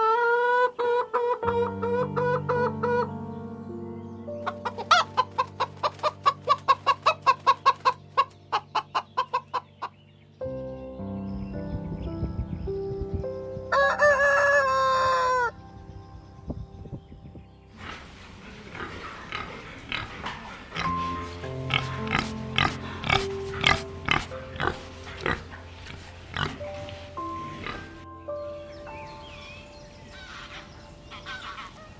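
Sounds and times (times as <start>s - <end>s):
background music: 0.0s - 31.9s.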